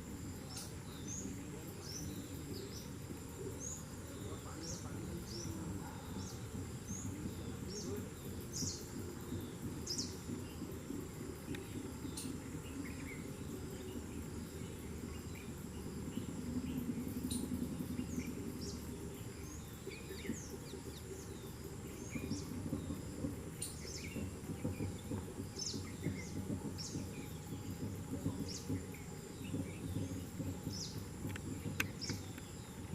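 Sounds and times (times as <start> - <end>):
birds chirping: 0.0 - 32.9
low outdoor rumble: 0.0 - 32.9.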